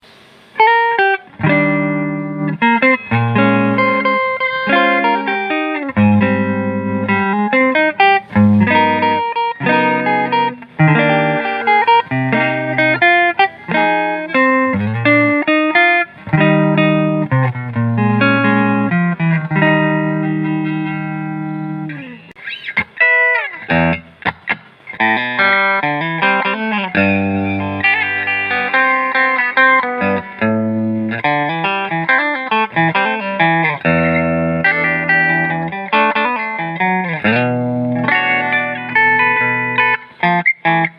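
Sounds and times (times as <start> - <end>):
electric guitar playing: 0.0 - 40.9.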